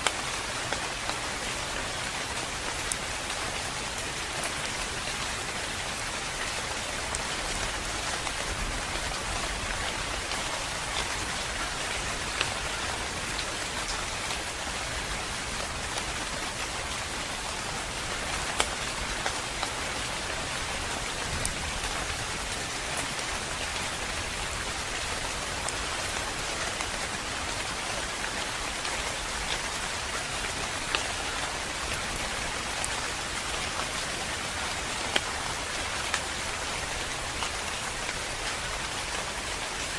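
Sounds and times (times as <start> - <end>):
calm rain falling: 0.0 - 39.9.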